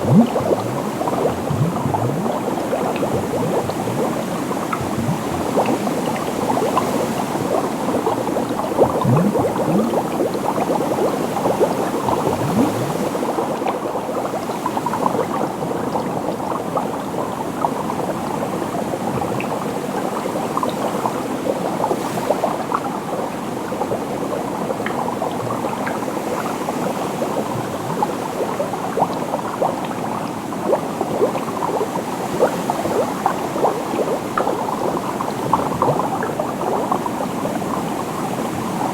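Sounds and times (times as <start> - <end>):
bubbles giving rising blips: 0.0 - 21.6, 32.6 - 37.4
liquid bubbling and gurgling: 0.0 - 38.9.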